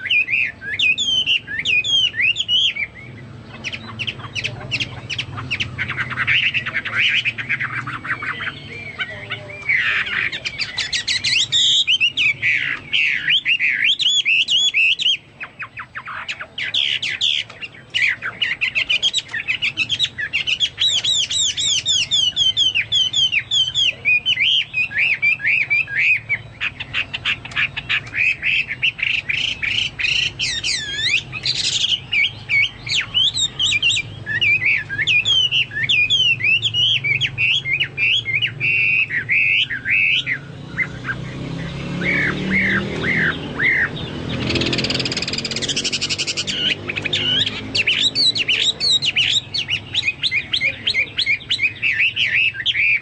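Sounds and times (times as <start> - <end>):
bird singing whistled phrases: 0.0 - 53.0.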